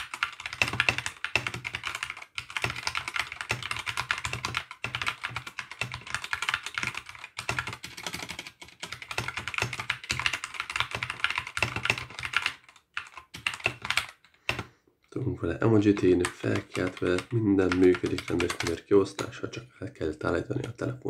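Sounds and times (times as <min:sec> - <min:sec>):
mechanical keyboard typing: 0:00.0 - 0:14.7, 0:15.8 - 0:19.4.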